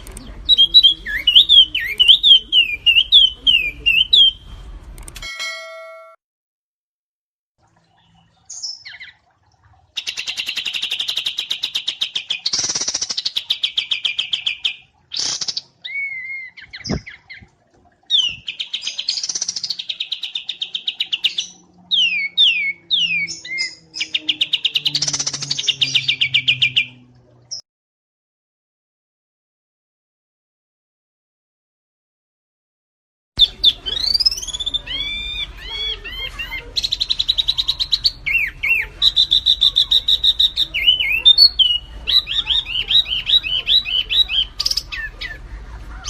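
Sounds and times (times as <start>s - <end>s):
songbird singing trills: 0.0s - 4.4s, 10.0s - 17.5s, 18.1s - 27.6s, 33.4s - 46.0s
sharp click: 5.0s - 5.3s.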